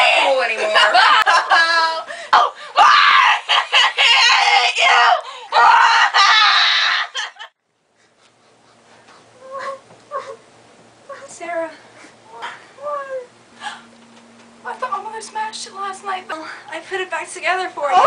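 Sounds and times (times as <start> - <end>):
girl screaming: 2.4 - 7.3.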